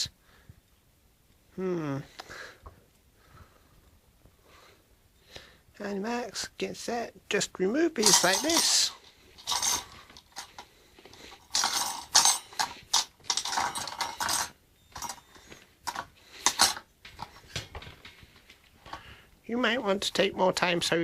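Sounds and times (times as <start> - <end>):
metal tool clinking on clamps: 8.0 - 10.7, 11.3 - 17.4.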